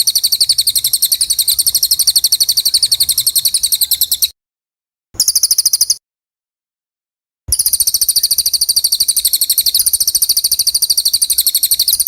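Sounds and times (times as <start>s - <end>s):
songbird trilling: 0.0s - 4.3s, 5.2s - 6.0s, 7.5s - 12.0s.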